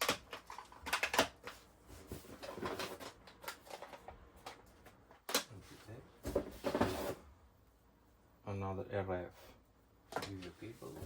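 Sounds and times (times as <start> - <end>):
items rustling: 0.0 - 7.3.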